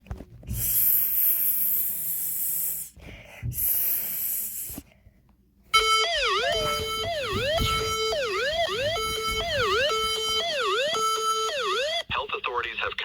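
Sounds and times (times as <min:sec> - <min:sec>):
electronic alert tone wailing: 0:05.8 - 0:12.0.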